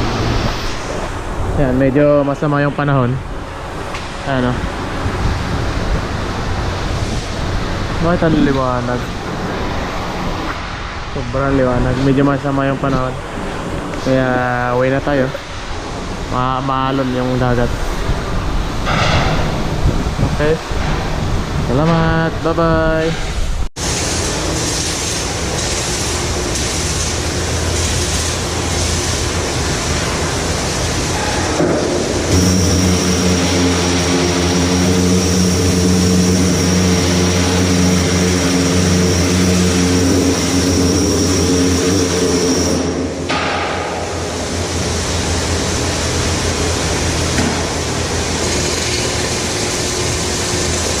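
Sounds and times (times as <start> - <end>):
wind: 0.0 - 24.6
sea noise: 23.8 - 51.0
steady engine drone: 23.8 - 51.0
engine hum with high whine: 26.0 - 51.0.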